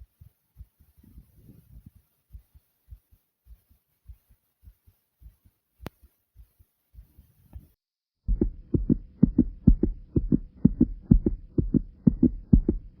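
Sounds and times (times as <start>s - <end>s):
fast heartbeat thumps: 0.0s - 7.2s, 8.2s - 13.0s
faint steady hum: 8.3s - 13.0s.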